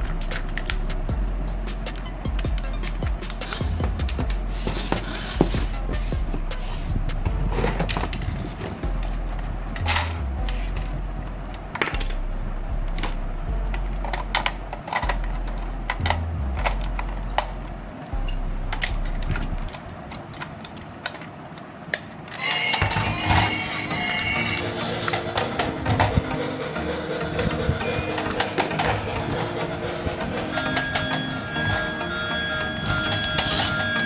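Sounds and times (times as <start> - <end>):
low bass line: 0.0 - 19.8
pitched music: 0.0 - 19.8, 22.4 - 34.0.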